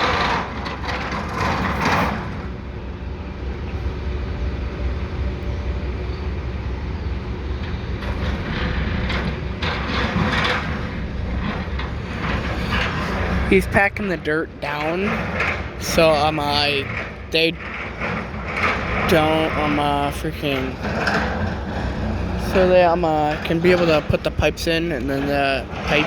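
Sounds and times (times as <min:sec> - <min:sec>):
excavator diesel engine rumbling: 0:00.0 - 0:26.0.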